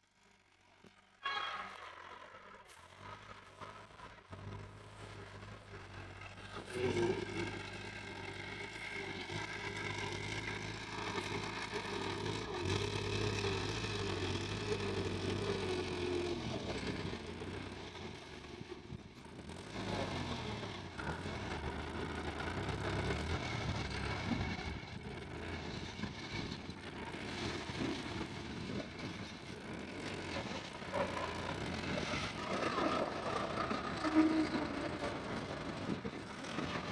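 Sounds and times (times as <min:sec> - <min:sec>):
tractor engine under load: 0:00.0 - 0:36.9.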